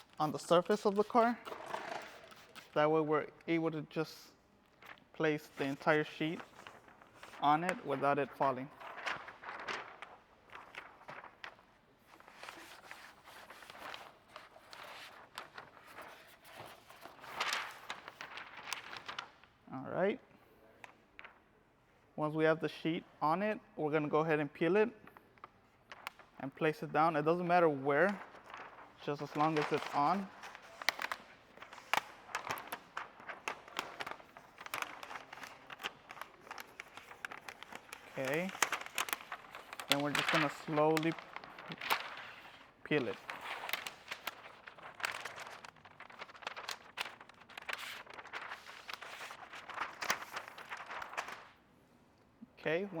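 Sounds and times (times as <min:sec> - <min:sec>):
plastic film crinkling: 0:00.0 - 0:02.8, 0:04.6 - 0:19.5, 0:27.2 - 0:51.6
light clicks and rustles: 0:28.1 - 0:42.2.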